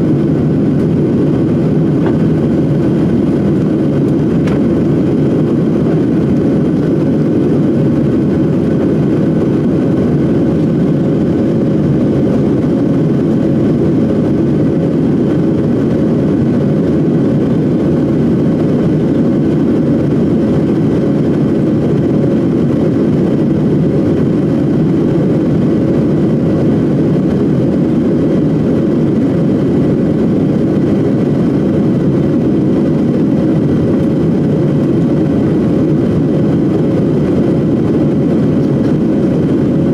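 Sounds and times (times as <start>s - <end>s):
jet engine cabin drone: 0.0s - 39.9s.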